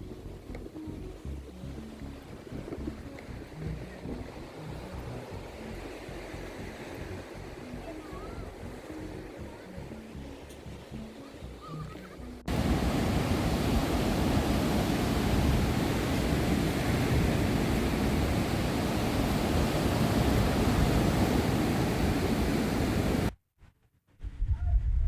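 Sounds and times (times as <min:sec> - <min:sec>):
ocean surf: 0:00.0 - 0:23.3
wind buffeting microphone: 0:12.5 - 0:23.3, 0:24.2 - 0:25.0.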